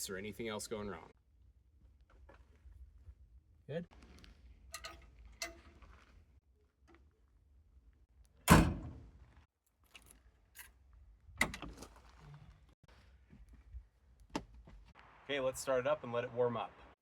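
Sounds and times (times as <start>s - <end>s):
excavator cab door banging shut: 8.5s - 9.1s.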